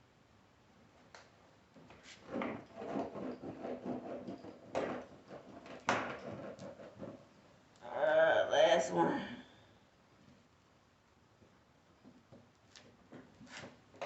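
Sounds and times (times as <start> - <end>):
plastic scraping and rustling: 1.2 - 7.4.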